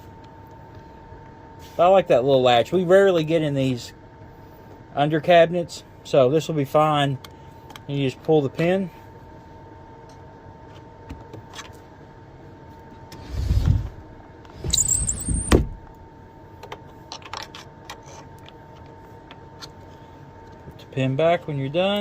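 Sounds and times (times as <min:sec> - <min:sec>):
cabinet door scraping and squealing: 0:14.6 - 0:15.8.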